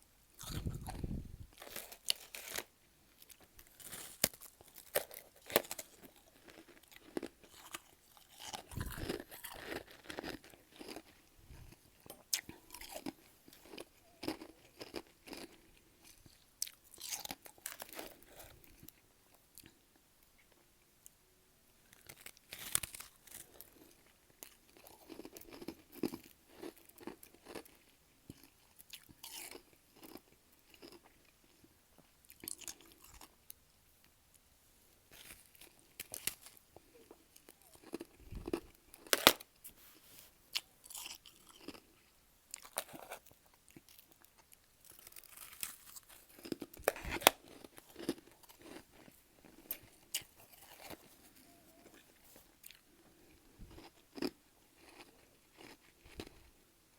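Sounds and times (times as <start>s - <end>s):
person chewing: 0.4s - 19.0s, 21.9s - 31.6s, 32.2s - 33.4s, 35.1s - 56.4s
crunching frost: 3.3s - 11.0s, 44.8s - 52.8s.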